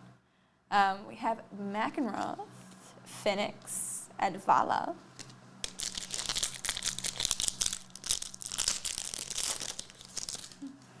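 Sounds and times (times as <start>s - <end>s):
plastic wrapper crinkling: 5.2s - 10.7s.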